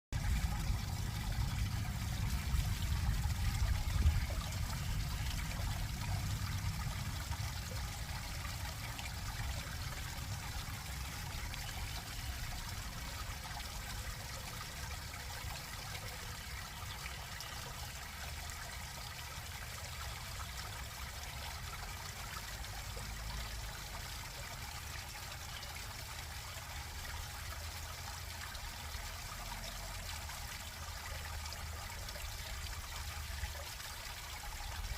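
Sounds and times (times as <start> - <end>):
low rumble: 0.2 - 10.6
stream water trickling: 0.2 - 34.9.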